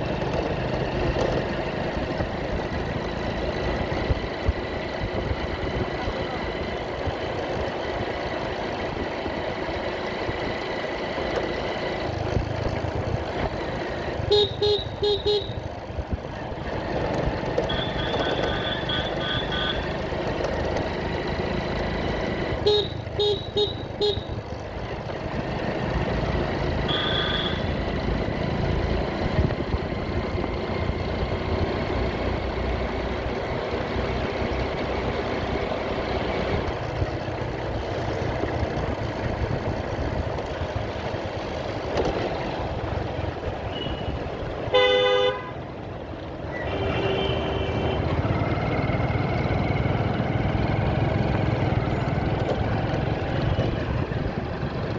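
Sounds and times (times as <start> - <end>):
motorcycle road and engine noise: 0.0 - 54.9
vehicle horns beeping: 14.2 - 15.7, 17.6 - 20.1, 22.6 - 24.4, 26.8 - 27.8, 43.6 - 45.6, 46.5 - 48.2
harsh horn blast: 14.3 - 15.6, 17.7 - 20.0, 22.6 - 24.4, 26.8 - 27.8, 43.7 - 45.6, 46.6 - 48.3.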